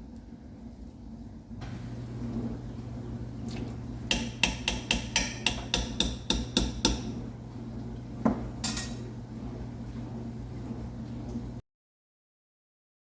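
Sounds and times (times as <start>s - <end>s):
steady low hum: 0.0s - 11.6s.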